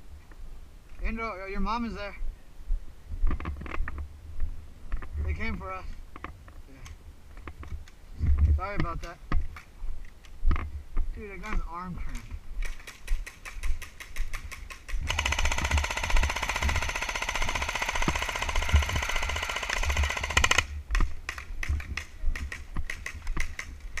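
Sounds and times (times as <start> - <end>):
airsoft gun full-auto burst: 15.0 - 20.7.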